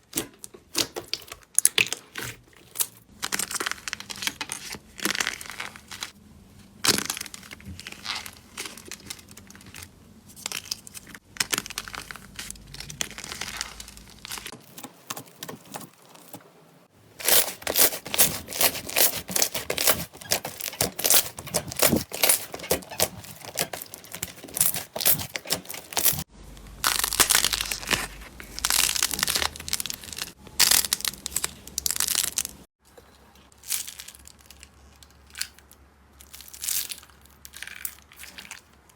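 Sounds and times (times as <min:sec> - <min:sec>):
slime crackling and popping: 0:17.2 - 0:32.6.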